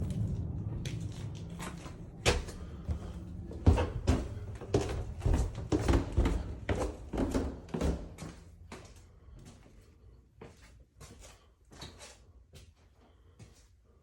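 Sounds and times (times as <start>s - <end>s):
irregular knocks and bumps: 0.8s - 8.2s.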